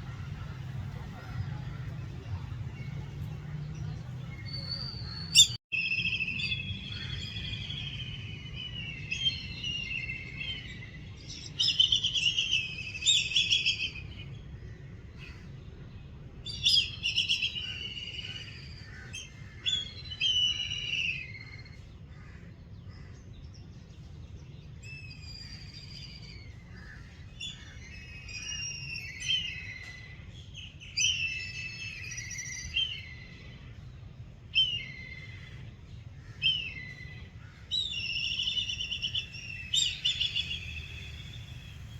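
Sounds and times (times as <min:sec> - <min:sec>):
low background rumble: 0:00.0 - 0:05.6, 0:33.0 - 0:41.9.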